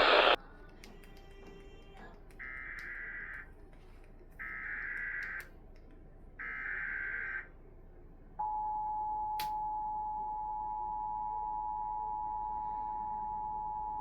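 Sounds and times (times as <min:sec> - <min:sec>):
harsh electronic data warble: 0:00.0 - 0:00.4.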